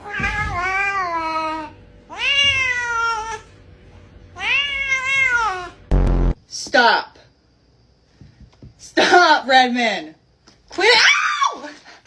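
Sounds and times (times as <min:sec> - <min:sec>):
cat meowing: 0:00.0 - 0:03.4, 0:04.4 - 0:05.8.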